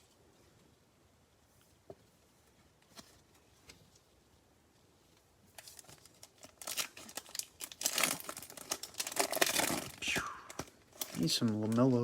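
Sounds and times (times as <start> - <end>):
wrapper tearing and crinkling: 5.6 - 12.0.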